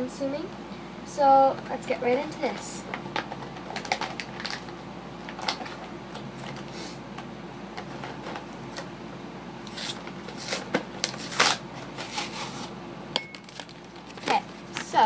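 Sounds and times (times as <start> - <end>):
toy packaging crinkling and tearing: 3.7 - 4.7.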